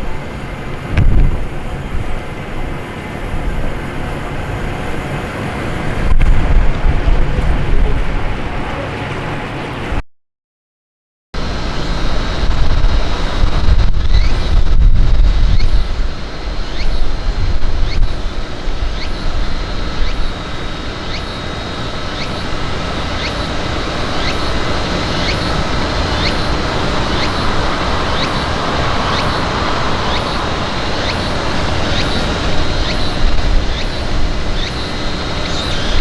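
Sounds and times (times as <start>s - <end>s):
outdoor background noise: 0.0s - 10.0s, 11.4s - 36.0s
wind buffeting microphone: 0.0s - 10.0s, 11.4s - 36.0s
short rising chirp: 24.1s - 34.0s.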